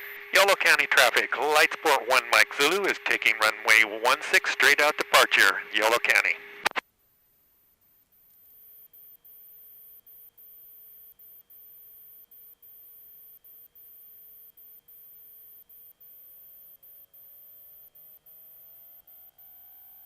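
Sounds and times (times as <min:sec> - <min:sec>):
faint airplane engine: 0:00.0 - 0:06.7
high electrical whine: 0:00.0 - 0:06.8.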